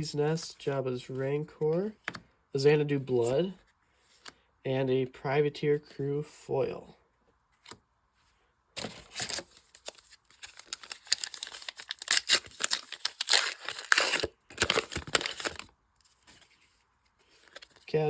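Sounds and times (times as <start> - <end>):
wrapper tearing and crinkling: 8.8 - 15.7.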